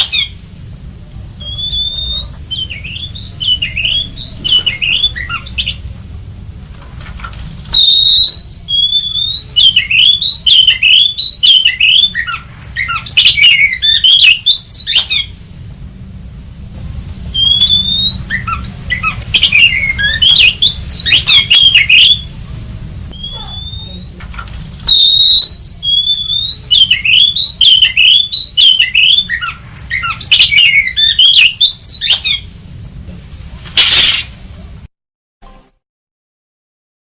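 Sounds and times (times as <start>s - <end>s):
bird singing whistled notes: 1.4s - 5.8s, 7.7s - 15.3s, 17.3s - 22.4s, 23.1s - 24.2s, 24.9s - 32.4s.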